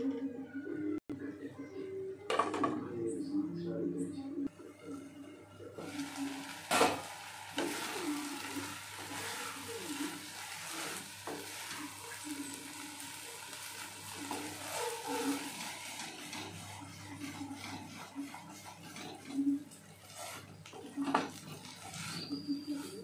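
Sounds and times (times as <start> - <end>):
food sizzling in a pan: 5.8 - 23.0.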